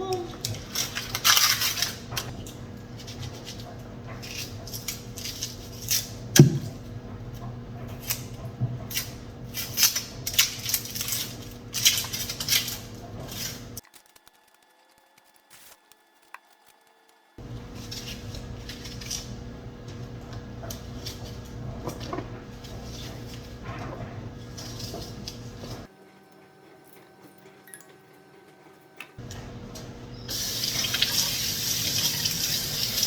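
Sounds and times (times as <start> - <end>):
steady low hum: 0.3 - 13.8, 17.4 - 26.2.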